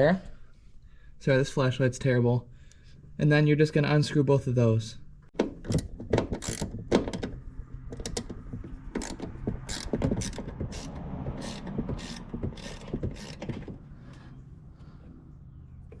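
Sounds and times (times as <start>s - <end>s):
fitting creaking: 5.3s - 14.5s
hand ratchet clicking: 5.7s - 7.2s, 8.9s - 13.7s.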